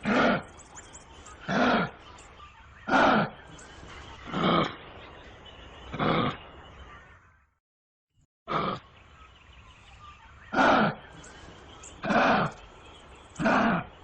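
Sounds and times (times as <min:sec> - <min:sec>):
kangaroo calls: 0:01.2 - 0:04.8, 0:10.4 - 0:14.0.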